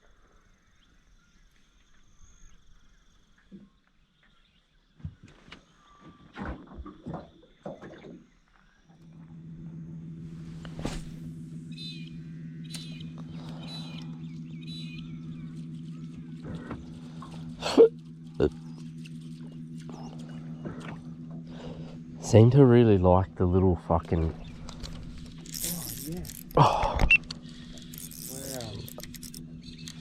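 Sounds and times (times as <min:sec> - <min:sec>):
knocks and scrapes on boat: 0:05.1 - 0:08.4, 0:15.8 - 0:17.6
boat motor humming: 0:07.6 - 0:30.0.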